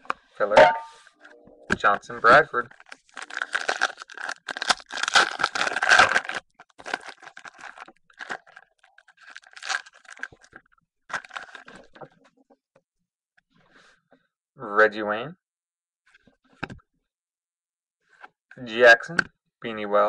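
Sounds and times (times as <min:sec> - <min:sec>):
foil wrapper crinkling and tearing: 0:02.6 - 0:11.9.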